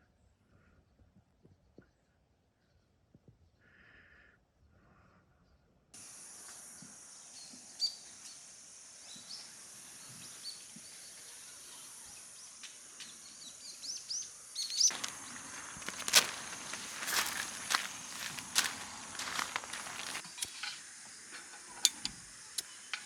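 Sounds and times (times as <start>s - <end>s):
birds chirping: 14.6s - 20.5s
footsteps crunching: 14.6s - 20.5s.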